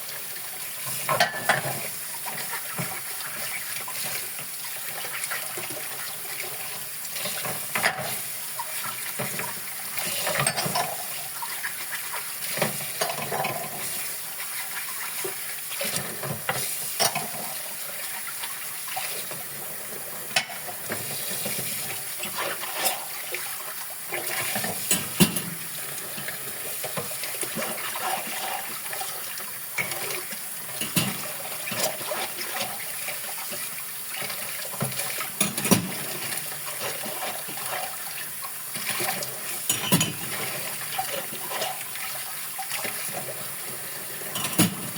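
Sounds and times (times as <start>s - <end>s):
tap running water: 0.0s - 44.9s
dishes clinking and knocking: 1.1s - 1.8s, 39.7s - 40.3s, 44.3s - 44.9s.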